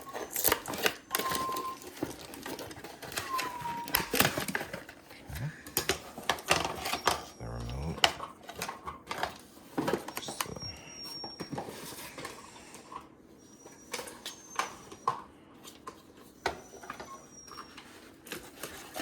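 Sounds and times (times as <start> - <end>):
packaging clicks taps and rustles: 0.0 - 7.4, 8.0 - 12.4.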